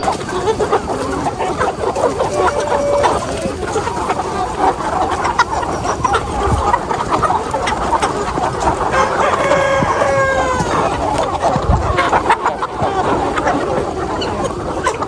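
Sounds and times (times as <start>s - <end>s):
chickens clucking: 0.0s - 15.0s.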